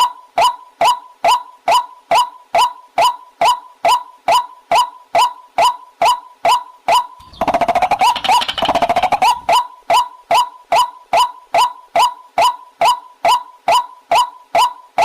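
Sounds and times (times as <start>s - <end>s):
waterhen calling: 7.2s - 9.6s.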